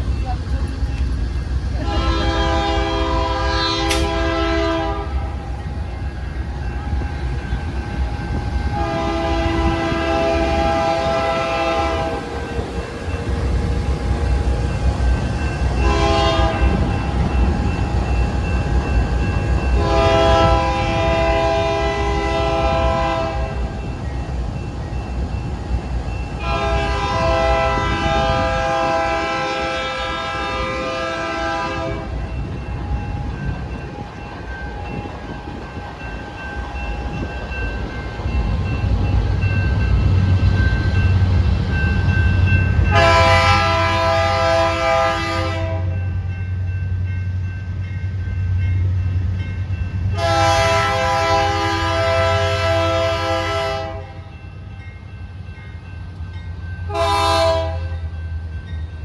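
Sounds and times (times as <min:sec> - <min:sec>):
train rumbling on rails: 0:00.0 - 0:59.0
locomotive air horn blasts: 0:01.8 - 0:05.3, 0:08.7 - 0:12.3, 0:15.8 - 0:16.8, 0:19.8 - 0:23.5, 0:26.4 - 0:32.1, 0:42.9 - 0:46.0, 0:50.2 - 0:54.2, 0:56.9 - 0:58.0.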